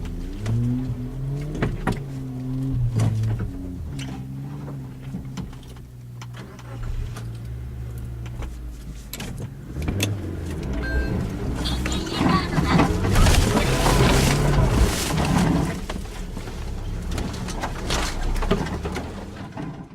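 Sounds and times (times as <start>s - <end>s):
car engine running at low revs: 0.0s - 19.9s
knocks and rattles: 11.6s - 19.9s.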